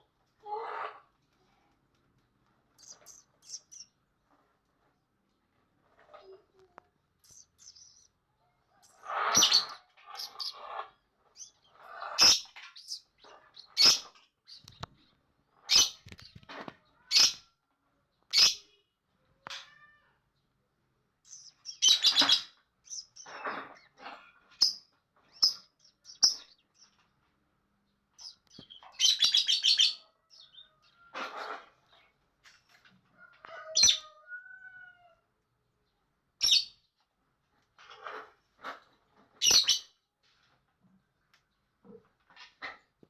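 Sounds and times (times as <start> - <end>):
lovebird chattering: 2.8 - 3.9, 7.2 - 8.1, 8.8 - 10.8, 11.4 - 14.8.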